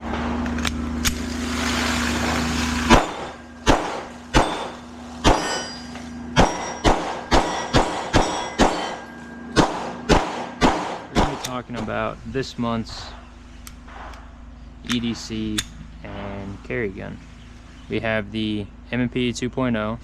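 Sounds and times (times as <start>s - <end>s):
steady low hum: 0.0s - 20.0s
sharp metallic clanks: 2.9s - 11.9s.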